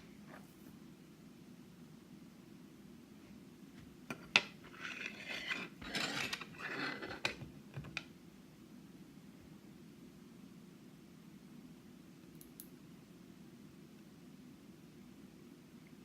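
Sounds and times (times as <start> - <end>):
metal tools clinking and scraping: 4.8 - 7.4.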